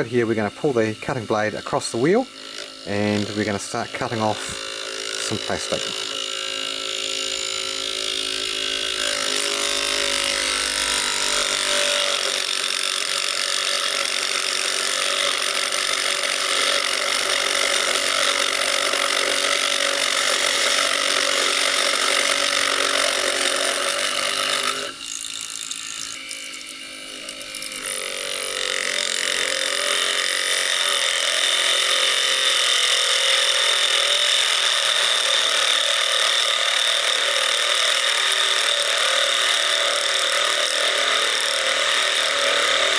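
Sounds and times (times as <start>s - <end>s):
small electric motor whirring: 0.0s - 42.9s
blade scraping plastic: 0.2s - 12.6s.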